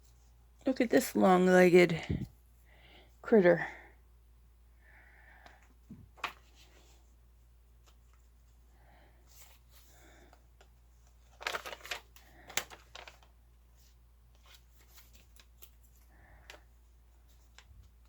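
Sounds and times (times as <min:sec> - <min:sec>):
paper rustling: 0:06.1 - 0:07.0, 0:09.3 - 0:18.0.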